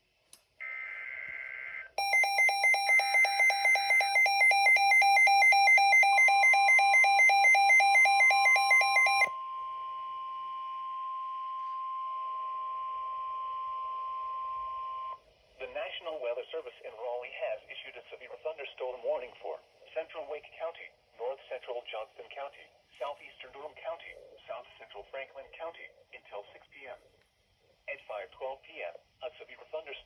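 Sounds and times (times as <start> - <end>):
fast-pulsing alarm beep: 2.0 - 9.3
steady warning alarm tone: 2.0 - 9.4.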